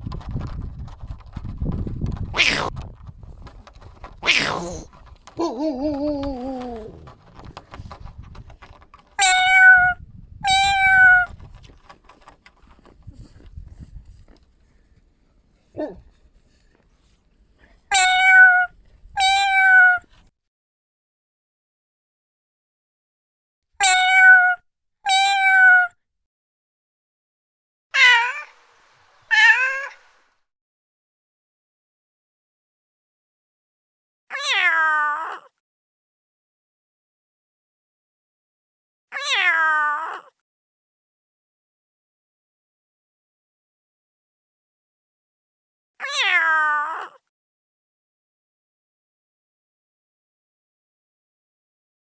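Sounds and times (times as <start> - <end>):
cat meowing: 2.4 - 2.7, 4.2 - 4.9, 9.2 - 11.3, 17.9 - 20.1, 23.8 - 26.0, 28.0 - 28.6, 29.3 - 30.0, 34.3 - 35.5, 39.1 - 40.3, 46.0 - 47.2.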